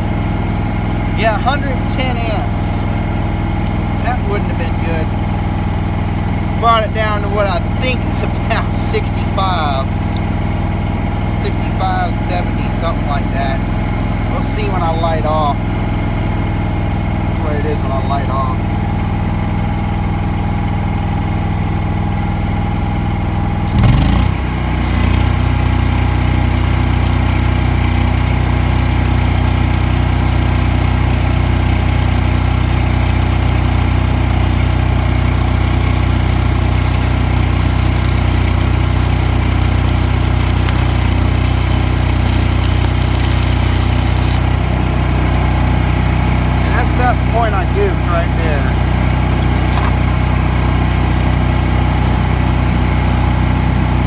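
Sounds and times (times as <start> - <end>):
welder engine running: 0.0 - 54.0
welding arc crackling hiss: 23.6 - 51.2.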